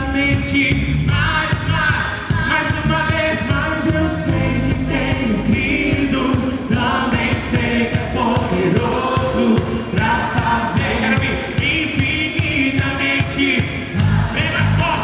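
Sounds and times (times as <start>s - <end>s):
live band playing worship song: 0.0s - 15.0s.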